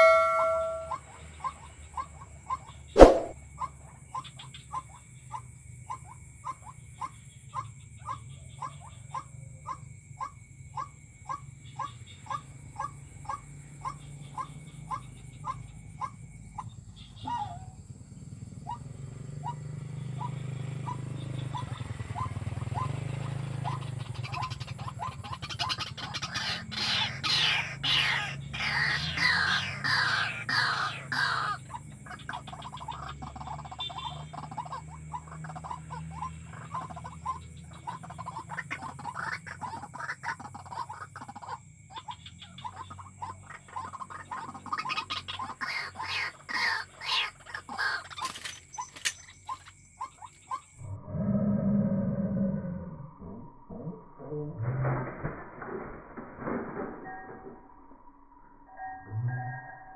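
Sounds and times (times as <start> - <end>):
waterhen calling: 0.0 - 1.0, 23.6 - 48.4
sharp click: 3.0 - 3.4.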